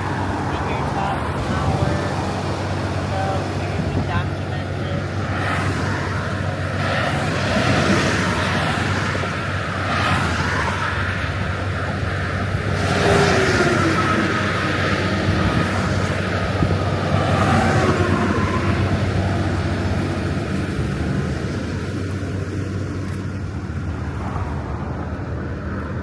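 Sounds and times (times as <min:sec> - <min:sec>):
low engine hum: 0:00.0 - 0:26.0
road noise: 0:00.0 - 0:26.0.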